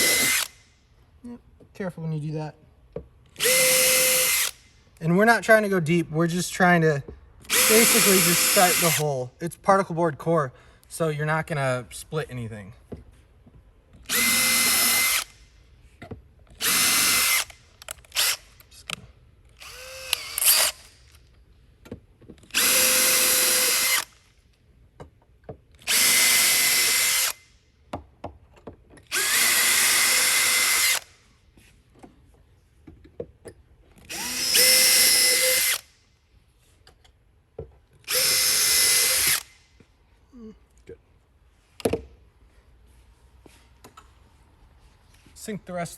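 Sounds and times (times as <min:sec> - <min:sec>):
power drill whining: 0:00.0 - 0:00.6, 0:03.4 - 0:04.6, 0:07.4 - 0:09.0, 0:14.0 - 0:15.4, 0:16.6 - 0:18.5, 0:19.6 - 0:21.0, 0:22.4 - 0:24.2, 0:25.8 - 0:27.5, 0:29.1 - 0:31.2, 0:34.0 - 0:36.0, 0:38.0 - 0:39.6.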